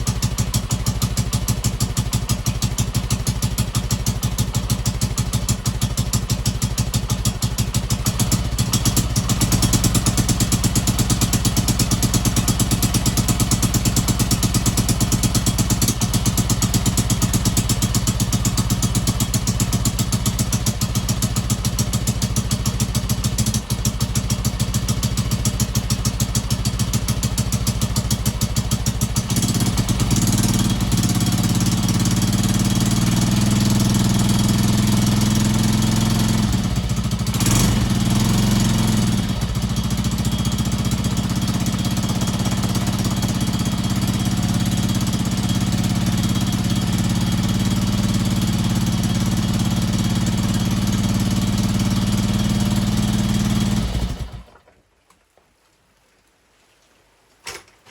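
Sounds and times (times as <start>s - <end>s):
motorcycle engine running: 0.0s - 54.5s.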